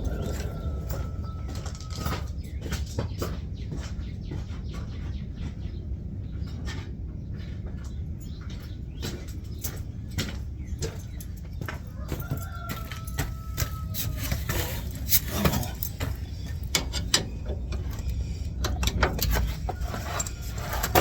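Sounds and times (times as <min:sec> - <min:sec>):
low background rumble: 0:00.0 - 0:21.0
screwdriver metallic clicks and scrapes: 0:14.0 - 0:16.0.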